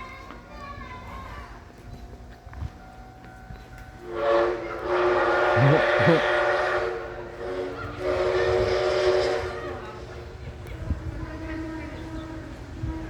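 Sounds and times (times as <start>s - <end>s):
steam locomotive whistle blasts: 4.0s - 10.3s.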